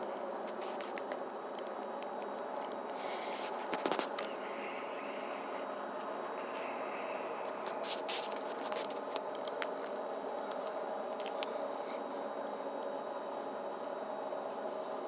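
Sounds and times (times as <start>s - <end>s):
light clicks and scrapes: 0.4s - 12.0s.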